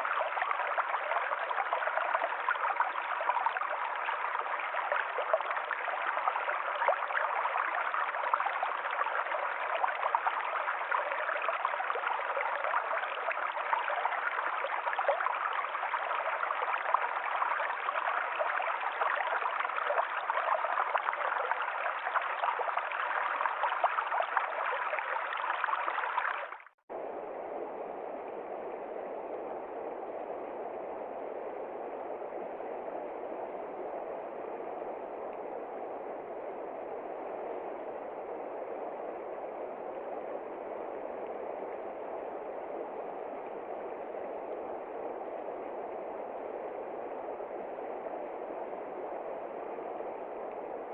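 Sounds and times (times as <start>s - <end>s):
low steady rushing noise: 26.9s - 50.9s.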